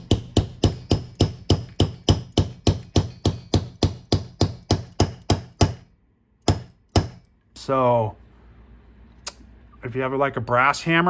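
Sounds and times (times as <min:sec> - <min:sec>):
hammer tapping with ring: 0:00.0 - 0:05.8.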